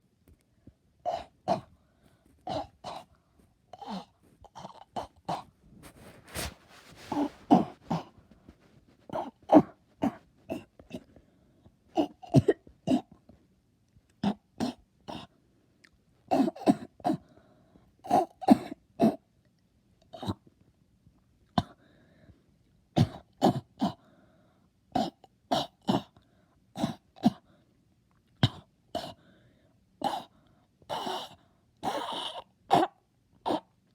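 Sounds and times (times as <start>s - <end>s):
person coughing: 7.0s - 8.2s, 9.1s - 11.1s, 12.0s - 13.1s, 23.0s - 24.0s.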